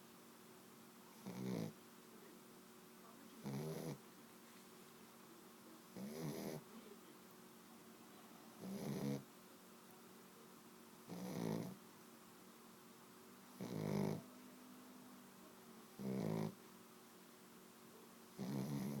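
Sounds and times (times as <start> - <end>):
dog snoring: 1.1 - 1.8, 3.4 - 4.0, 6.0 - 6.6, 8.6 - 9.3, 11.1 - 11.8, 13.5 - 14.3, 16.0 - 16.6, 18.4 - 19.0.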